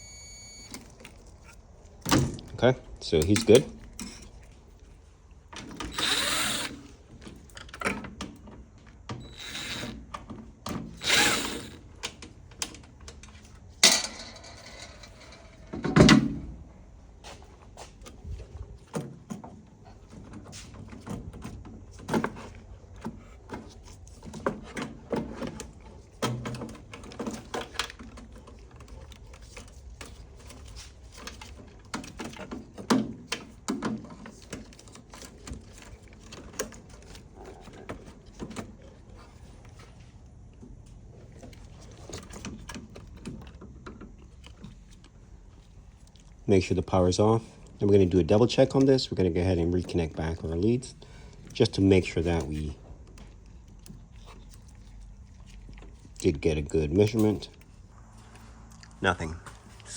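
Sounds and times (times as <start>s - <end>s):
tools clicking and knocking on parts: 2.0s - 4.5s, 5.5s - 16.4s.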